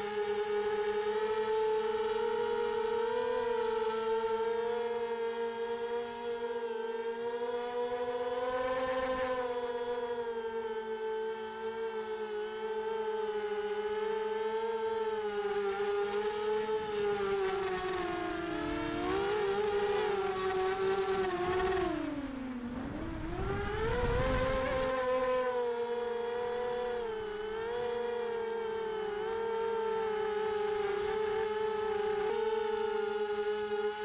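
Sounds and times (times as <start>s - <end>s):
drone motors and propellers whining: 0.0s - 34.0s
low rumble of wind: 17.9s - 27.6s.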